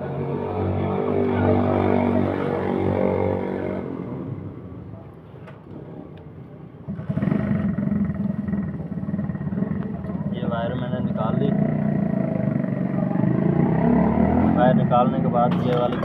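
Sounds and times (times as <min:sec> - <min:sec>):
rough engine sound: 0:06.8 - 0:16.0
vehicle engine humming: 0:06.8 - 0:16.0.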